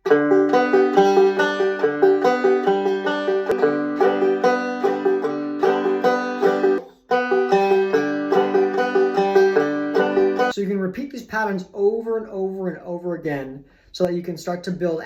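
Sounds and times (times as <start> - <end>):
banjo plucked notes: 0.0 - 10.5.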